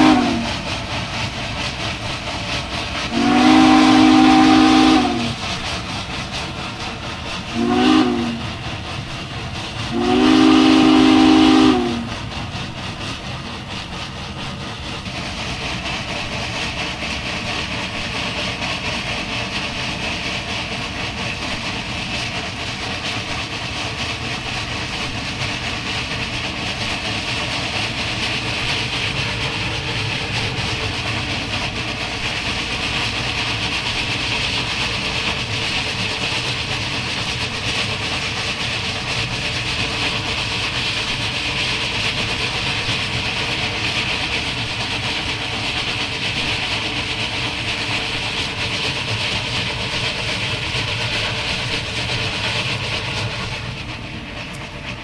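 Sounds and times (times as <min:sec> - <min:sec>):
steam locomotive chime whistle: 0:00.0 - 0:00.6, 0:03.1 - 0:05.4, 0:07.5 - 0:08.5, 0:09.9 - 0:12.1
steam locomotive running: 0:00.0 - 0:55.0.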